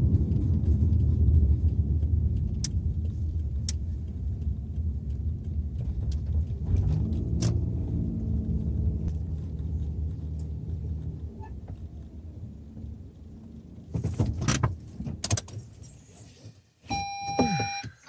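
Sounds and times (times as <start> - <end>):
car engine running: 0.0 - 15.9
sharp clicks and knocks: 0.0 - 15.9
short beep: 16.9 - 18.0.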